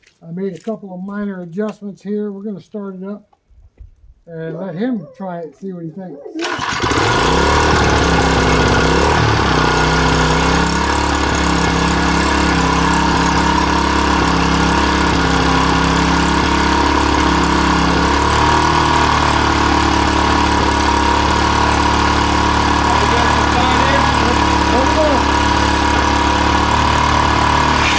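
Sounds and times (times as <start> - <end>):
small gasoline engine running: 6.4 - 27.9.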